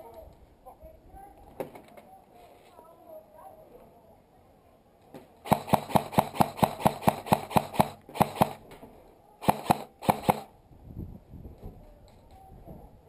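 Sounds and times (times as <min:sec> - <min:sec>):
airsoft gun shots: 0:05.4 - 0:08.7, 0:09.4 - 0:10.5.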